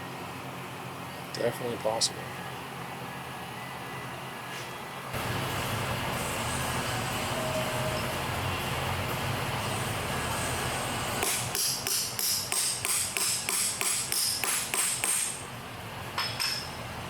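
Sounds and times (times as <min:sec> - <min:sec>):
hammer tapping on metal: 0:11.2 - 0:15.4.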